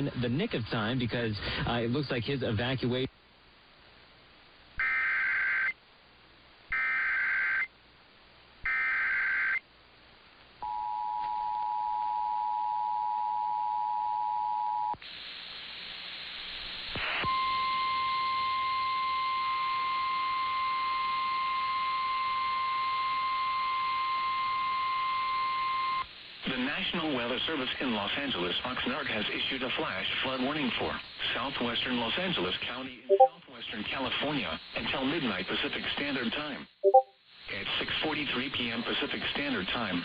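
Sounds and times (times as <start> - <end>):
radio hiss: 0.0 - 3.1, 15.0 - 18.6, 26.0 - 40.0
data header tone bursts: 33.1 - 33.3, 36.8 - 37.1
two-tone attention signal: 33.1 - 33.4, 36.8 - 37.1.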